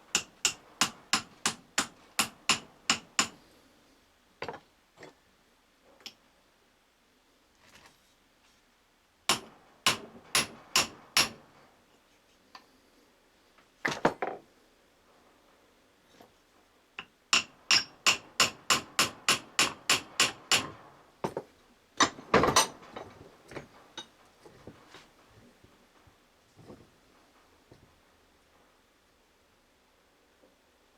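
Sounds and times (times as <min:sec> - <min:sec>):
hammer tapping on metal parts: 0:00.1 - 0:03.4, 0:09.3 - 0:11.5, 0:17.0 - 0:24.7.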